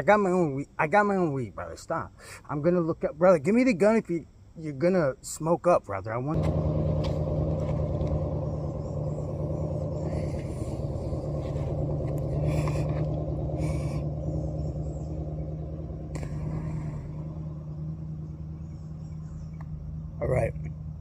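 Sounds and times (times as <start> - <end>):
vehicle engine running: 6.4 - 21.0.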